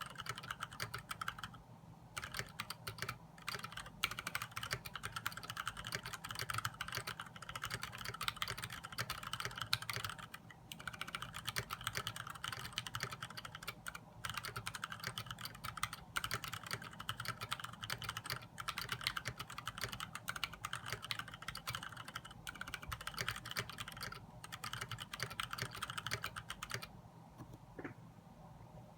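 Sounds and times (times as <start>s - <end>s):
typing on mechanical keyboard: 0.0s - 1.6s, 2.2s - 26.9s.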